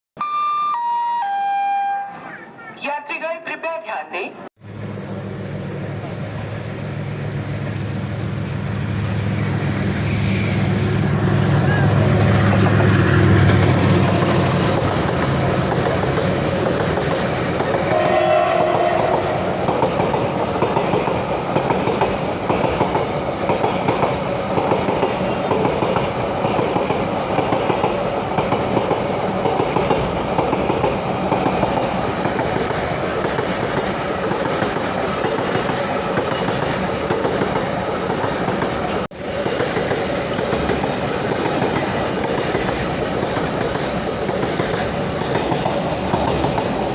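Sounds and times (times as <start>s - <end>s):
diesel locomotive engine passing: 4.6s - 46.9s
train wheels clacking on rail joints: 11.9s - 46.9s.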